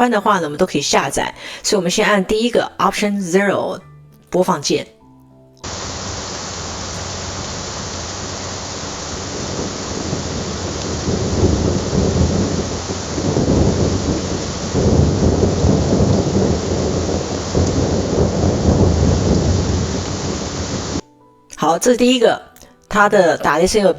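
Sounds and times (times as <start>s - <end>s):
thunder rumbling: 5.6s - 21.0s
steady rain hiss: 5.6s - 22.2s.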